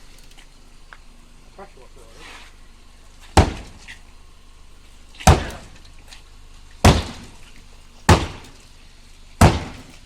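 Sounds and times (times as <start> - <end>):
sledgehammer striking car body: 3.2 - 4.0, 5.2 - 5.8, 6.8 - 7.5, 8.1 - 8.6, 9.4 - 10.0.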